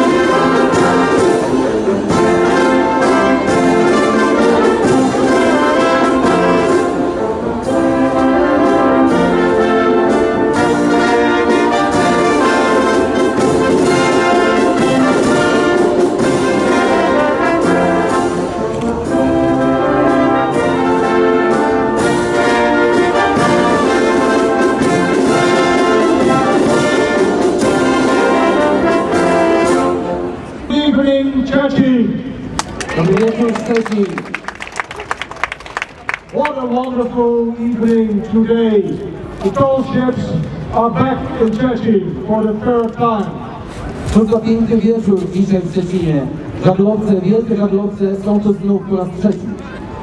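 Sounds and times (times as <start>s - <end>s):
brass music: 0.0s - 35.8s.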